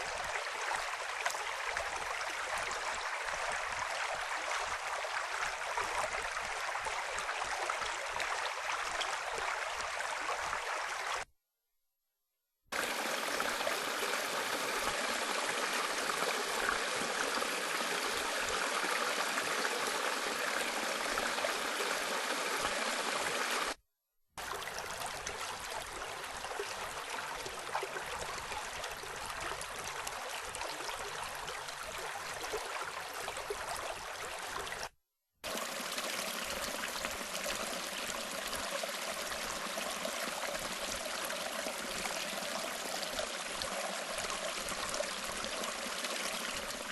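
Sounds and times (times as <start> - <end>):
running water: 12.7 - 23.8, 35.4 - 46.9.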